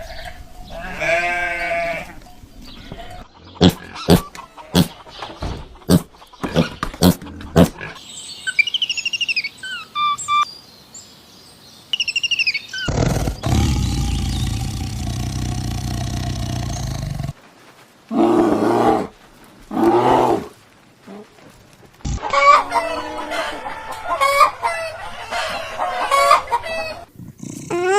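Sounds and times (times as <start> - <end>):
animal roar: 12.9 - 17.4, 18.1 - 19.1, 19.7 - 20.5.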